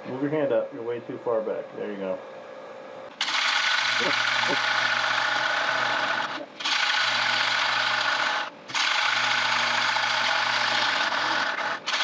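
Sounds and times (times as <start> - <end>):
low lathe hum: 0.8 - 12.0
gouge scraping spinning wood: 3.2 - 12.0.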